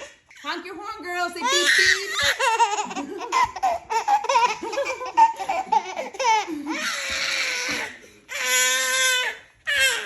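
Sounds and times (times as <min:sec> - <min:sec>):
toddler squealing and crying: 0:05.2 - 0:10.0.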